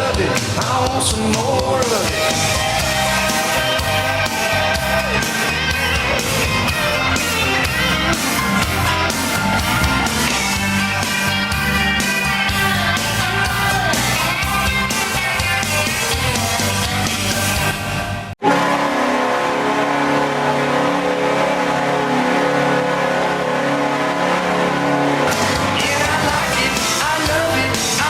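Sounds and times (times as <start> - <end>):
steady drum beat: 0.0 - 18.0, 25.3 - 28.0
person singing rock song: 0.0 - 18.3, 25.3 - 28.0.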